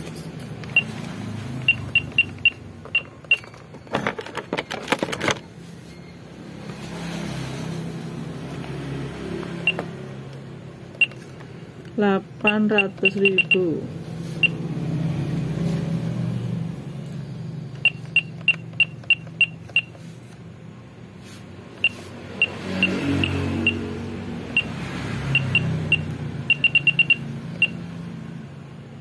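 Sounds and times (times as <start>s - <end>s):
keypad beeps: 0.7s - 1.0s, 1.6s - 3.9s, 9.6s - 9.9s, 11.0s - 11.3s, 12.4s - 13.8s, 17.8s - 20.0s, 21.8s - 23.9s, 24.5s - 27.8s.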